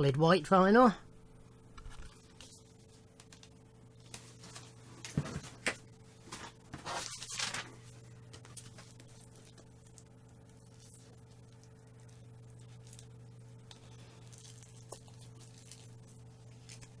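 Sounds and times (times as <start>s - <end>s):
faint steady hum: 0.0s - 17.0s
packaging rustle: 1.9s - 13.1s.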